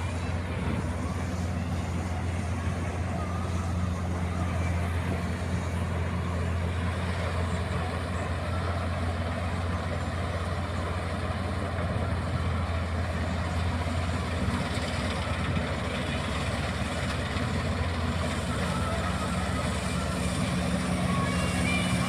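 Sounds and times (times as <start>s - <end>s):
combine harvester running: 0.0s - 22.0s.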